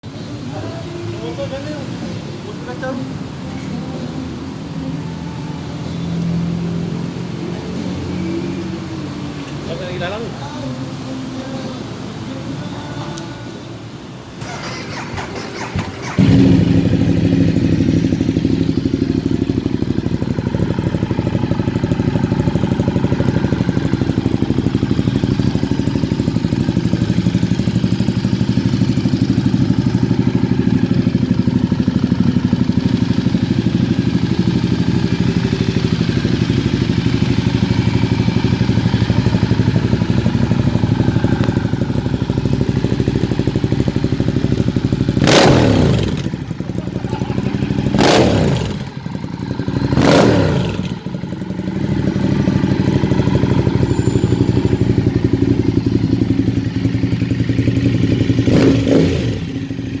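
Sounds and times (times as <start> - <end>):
sharp loud engine burst: 14.4 - 17.4
motorcycle engine idling: 14.4 - 60.0.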